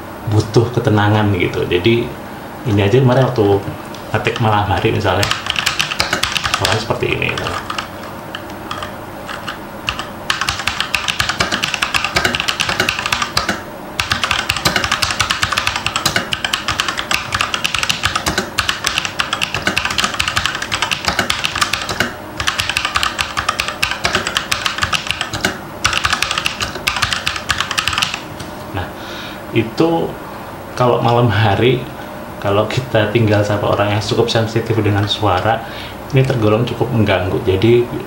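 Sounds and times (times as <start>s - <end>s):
mechanical keyboard typing: 4.2s - 4.6s, 5.2s - 28.2s.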